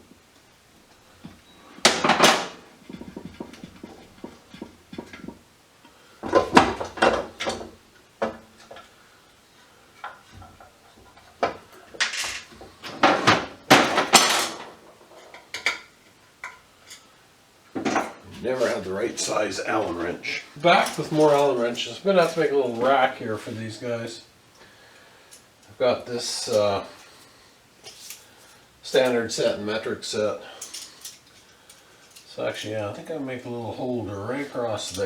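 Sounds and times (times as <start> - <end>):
metal hand tools clinking: 30.5 - 32.8.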